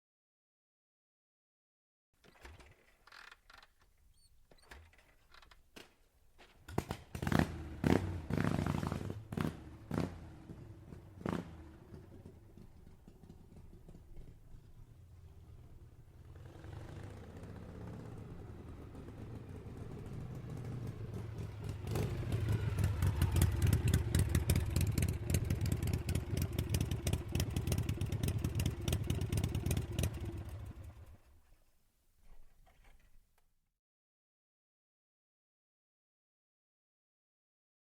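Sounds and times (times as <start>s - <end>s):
motorcycle engine cranking: 2.2s - 6.0s
motorcycle engine loping: 7.1s - 31.1s.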